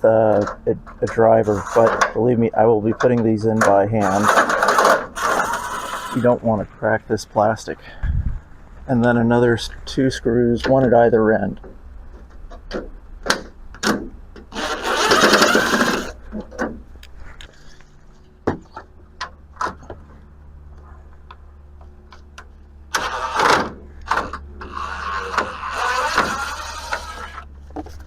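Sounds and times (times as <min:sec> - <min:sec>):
power screwdriver whirring: 0:14.5 - 0:16.2, 0:22.9 - 0:27.5.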